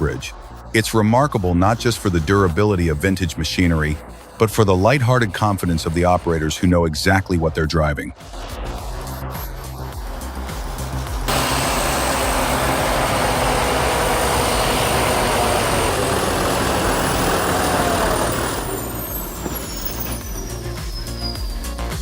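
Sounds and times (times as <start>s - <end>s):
heavy vehicle engine rumbling: 11.3s - 21.4s.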